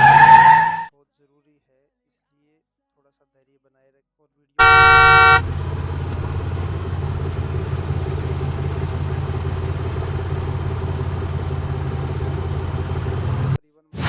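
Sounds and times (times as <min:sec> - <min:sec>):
vehicle engine humming: 0:04.6 - 0:14.0.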